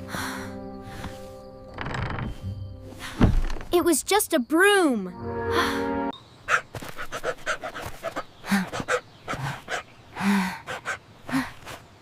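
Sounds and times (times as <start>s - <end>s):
dog panting: 6.5s - 9.9s, 10.5s - 11.0s.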